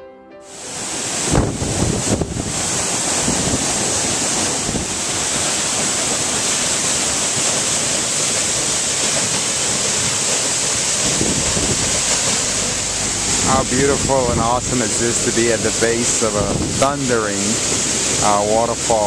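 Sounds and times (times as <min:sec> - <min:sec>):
waterfall rushing: 0:00.5 - 0:19.0
wind buffeting microphone: 0:01.0 - 0:06.5, 0:10.8 - 0:18.3.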